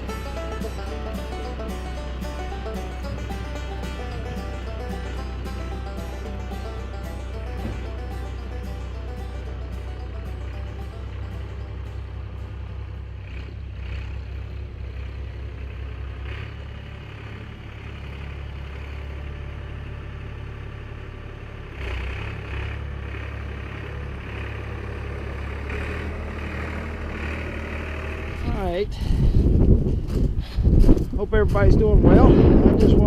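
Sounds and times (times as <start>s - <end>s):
tractor diesel engine idling: 0.0s - 29.8s.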